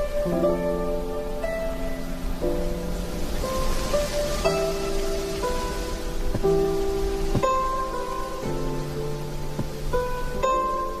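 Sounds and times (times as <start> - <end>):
gentle instrumental music: 0.0 - 11.0.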